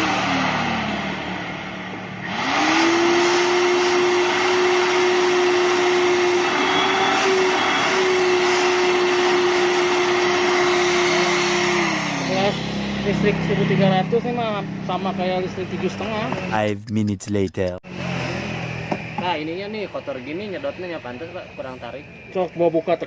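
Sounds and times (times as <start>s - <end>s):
vacuum cleaner motor whining: 0.0s - 13.1s.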